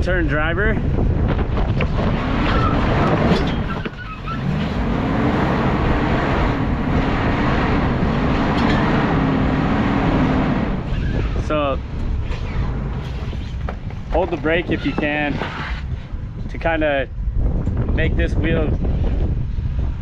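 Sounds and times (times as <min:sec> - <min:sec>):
truck engine revving: 0:01.2 - 0:16.2.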